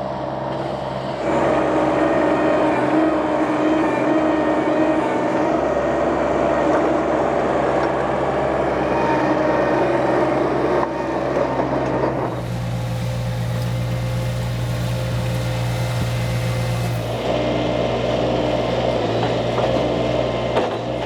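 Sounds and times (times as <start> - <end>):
skid steer engine humming: 0.0 - 21.0.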